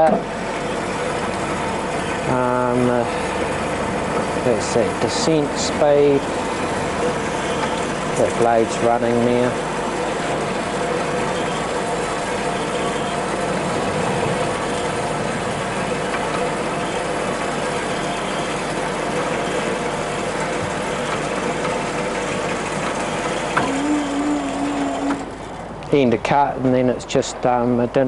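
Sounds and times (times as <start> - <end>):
metal-cutting bandsaw running: 20.2 - 25.6.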